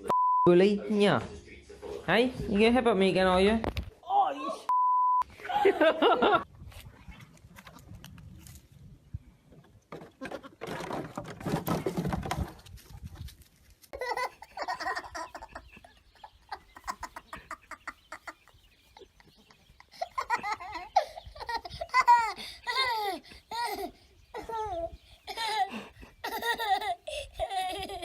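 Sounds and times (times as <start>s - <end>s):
person laughing: 5.4s - 6.5s, 14.0s - 28.0s
rustling and knocking: 9.5s - 13.6s.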